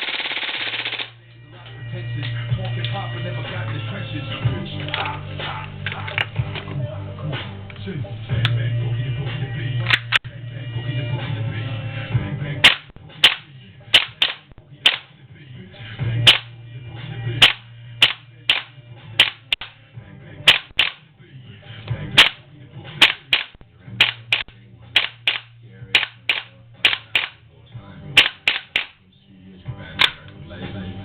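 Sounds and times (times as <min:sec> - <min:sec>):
faint background music: 0:00.8 - 0:31.0
airsoft pistol shots: 0:12.6 - 0:15.1, 0:16.3 - 0:16.5, 0:17.4 - 0:19.7, 0:20.5 - 0:21.0, 0:22.2 - 0:22.4, 0:23.0 - 0:27.4, 0:28.2 - 0:29.0.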